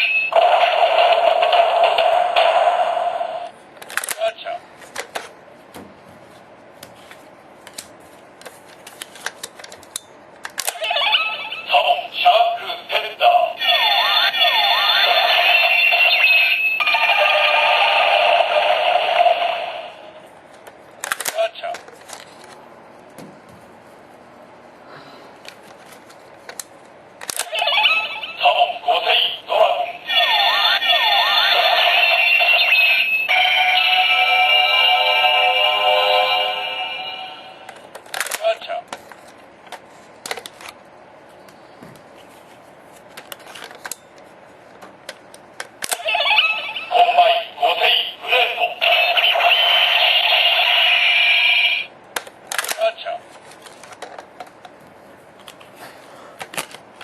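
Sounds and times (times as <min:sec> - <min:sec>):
toy electronic sound effect: 0:00.0 - 0:03.5, 0:10.7 - 0:20.2, 0:27.4 - 0:37.8, 0:45.9 - 0:51.9
long held electronic tone: 0:30.2 - 0:37.7.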